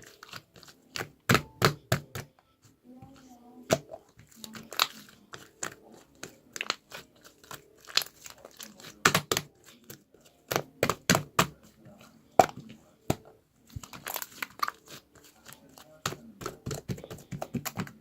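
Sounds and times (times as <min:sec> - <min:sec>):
crinkling and tearing: 0:04.3 - 0:10.1, 0:13.7 - 0:16.0.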